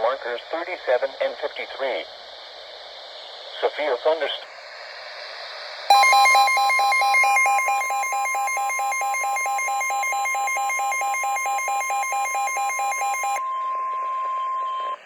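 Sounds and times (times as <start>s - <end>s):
lower buzzy tone beeping: 5.9s - 15.0s
steady high electronic tone: 5.9s - 15.0s.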